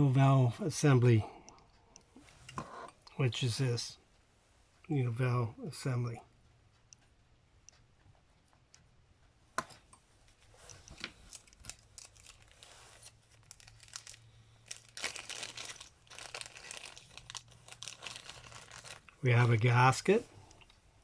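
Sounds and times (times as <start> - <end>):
packaging crinkling: 10.8 - 19.7.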